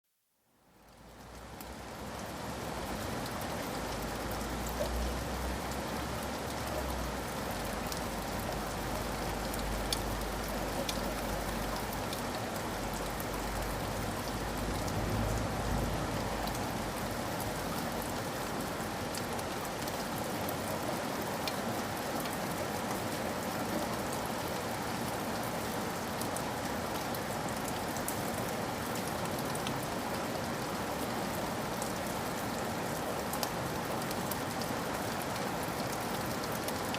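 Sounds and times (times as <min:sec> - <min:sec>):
steady rain hiss: 0:00.2 - 0:36.9.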